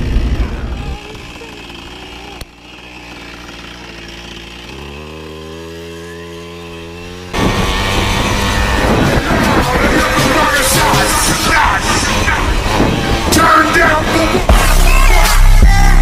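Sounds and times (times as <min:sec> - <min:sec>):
motorbike engine revving: 0:00.0 - 0:16.0
loud rushing sound: 0:07.4 - 0:14.9.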